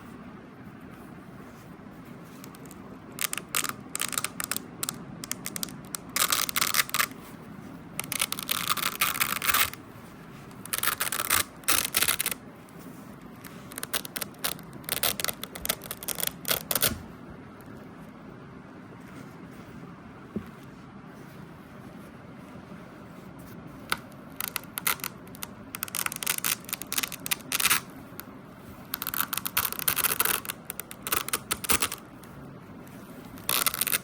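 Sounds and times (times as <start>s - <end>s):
velcro ripping apart: 2.4s - 7.2s, 8.0s - 9.8s, 10.5s - 12.4s, 13.4s - 17.0s, 23.9s - 27.9s, 28.9s - 32.1s, 33.4s - 34.0s.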